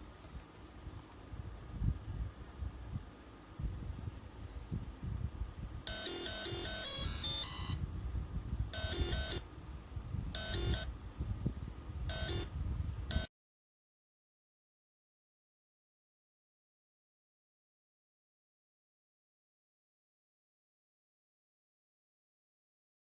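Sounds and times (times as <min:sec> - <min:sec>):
electronic alarm beeping tune: 0:05.9 - 0:07.8, 0:08.8 - 0:09.5, 0:10.4 - 0:10.9, 0:12.1 - 0:12.5.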